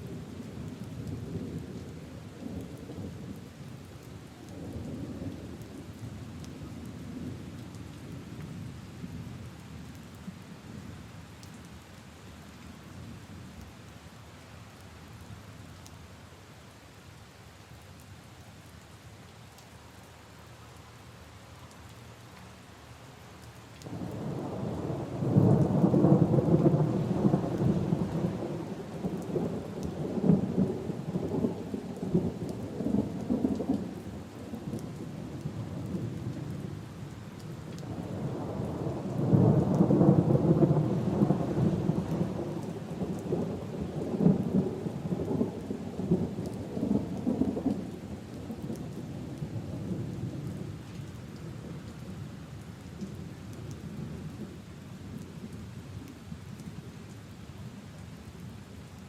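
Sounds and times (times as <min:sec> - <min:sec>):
rain falling: 0:00.0 - 0:59.0
thunder rumbling: 0:23.9 - 0:36.8, 0:37.8 - 0:50.6.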